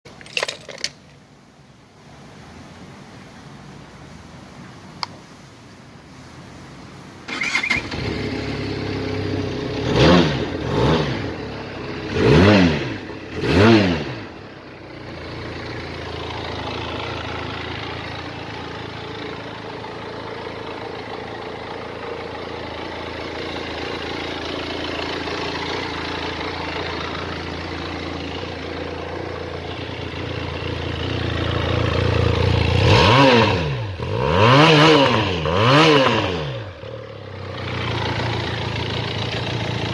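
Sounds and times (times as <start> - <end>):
motorcycle engine revving and idling: 7.3 - 39.9.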